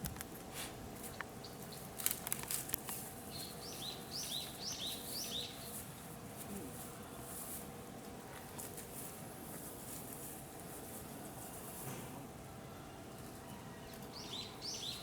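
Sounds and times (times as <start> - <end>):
small bird chirping: 3.3 - 5.8.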